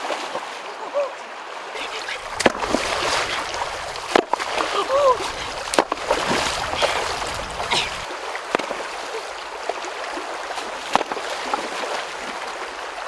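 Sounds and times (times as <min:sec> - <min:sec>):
stream water running: 0:00.0 - 0:13.0
sharp knocks or splashes: 0:02.1 - 0:09.0, 0:10.6 - 0:12.0.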